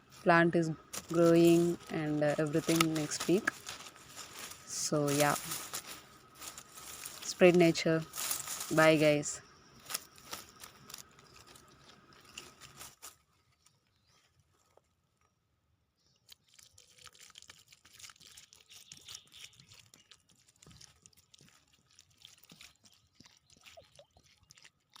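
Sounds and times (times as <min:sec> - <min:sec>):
faint crackling and rustling: 0:00.0 - 0:15.3, 0:16.3 - 0:25.0.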